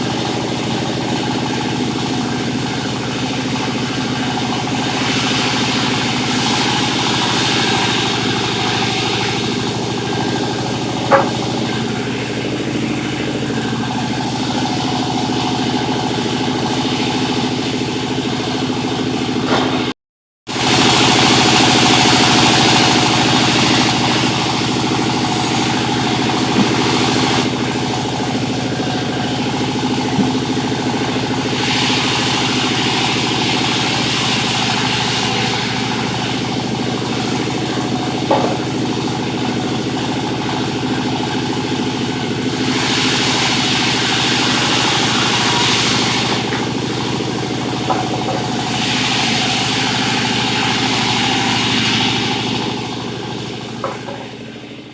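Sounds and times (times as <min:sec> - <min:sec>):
sawmill machinery droning: 0:00.0 - 0:19.9, 0:20.5 - 0:54.9.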